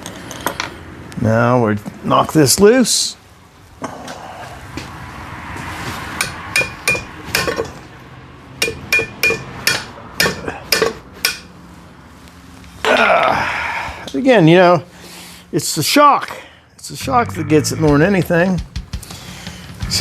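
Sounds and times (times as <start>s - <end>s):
hammer striking metal: 6.2s - 7.8s, 8.6s - 11.5s.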